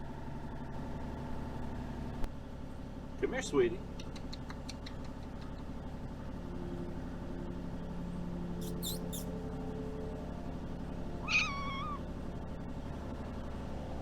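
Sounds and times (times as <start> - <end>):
steady low hum: 2.1 - 14.0
faint short clicks: 4.0 - 5.7
cat meowing: 8.6 - 9.3, 11.2 - 12.0.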